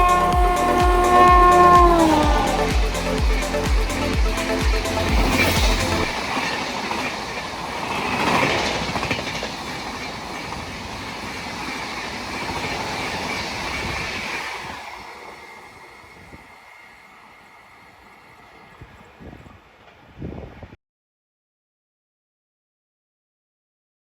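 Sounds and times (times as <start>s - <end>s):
train wheels clattering on rails: 1.2s - 20.2s.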